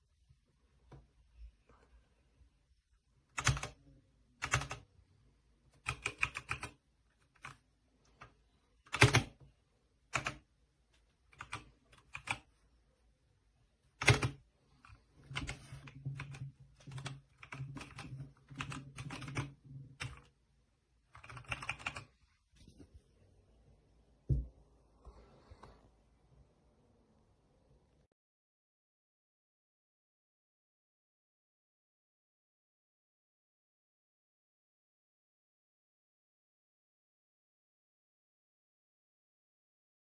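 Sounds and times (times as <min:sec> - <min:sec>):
mechanical keyboard typing: 0:03.3 - 0:03.8, 0:04.4 - 0:04.9, 0:05.8 - 0:07.6, 0:08.9 - 0:09.4, 0:10.1 - 0:10.5, 0:11.3 - 0:12.5, 0:14.0 - 0:20.4, 0:21.1 - 0:22.1.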